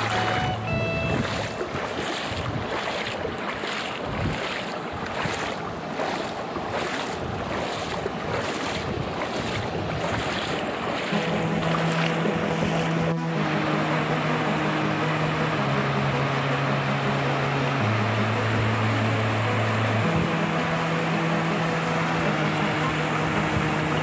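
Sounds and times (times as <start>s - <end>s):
stream and waterfall rushing: 0.0s - 24.0s
wind buffeting microphone: 0.7s - 12.9s.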